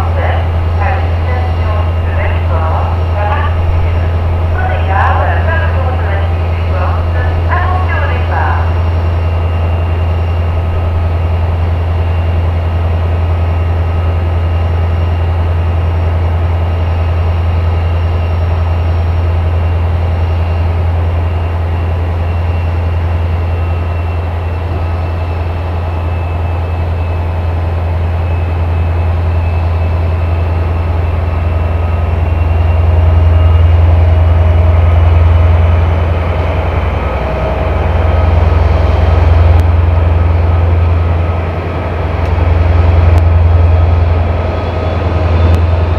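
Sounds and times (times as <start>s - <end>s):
diesel locomotive engine humming: 0.0s - 45.9s.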